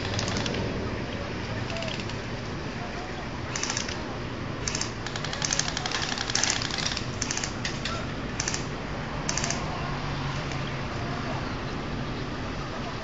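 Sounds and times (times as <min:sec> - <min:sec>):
airsoft gun bursts: 0:04.7 - 0:07.6.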